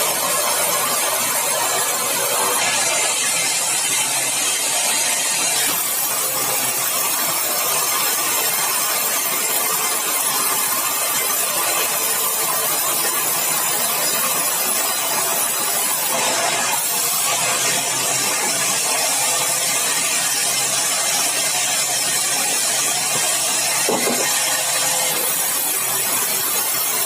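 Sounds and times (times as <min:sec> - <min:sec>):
sawmill saw cutting log: 0:00.0 - 0:27.0.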